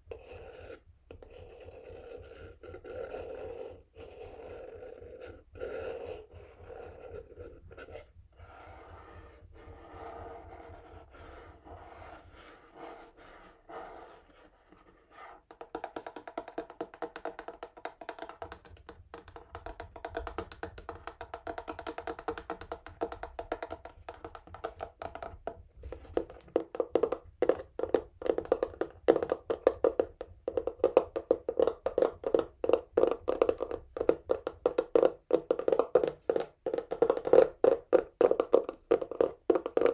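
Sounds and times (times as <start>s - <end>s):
fingernails scratching cardboard: 0.2s - 15.4s
fingernails tapping cardboard: 5.0s - 39.9s.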